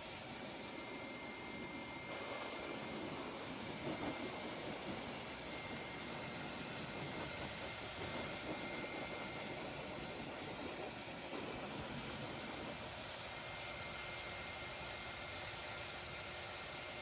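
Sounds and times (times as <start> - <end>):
strongly blowing air: 1.5 - 13.8.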